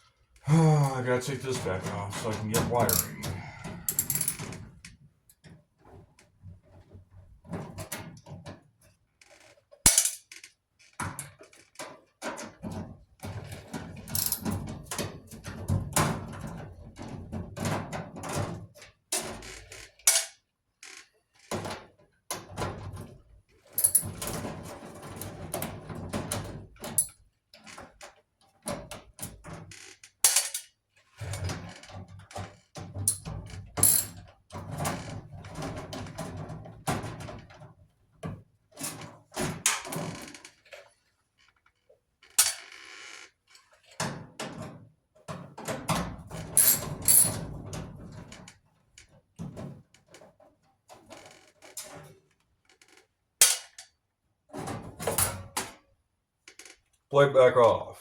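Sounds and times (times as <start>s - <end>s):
hand tools clicking and knocking: 0.9s - 4.7s, 11.1s - 15.5s, 23.8s - 24.6s, 26.8s - 27.2s.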